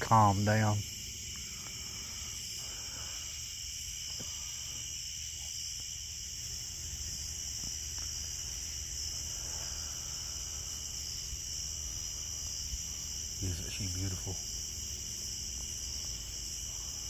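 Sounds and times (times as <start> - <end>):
insects trilling: 0.0 - 17.0.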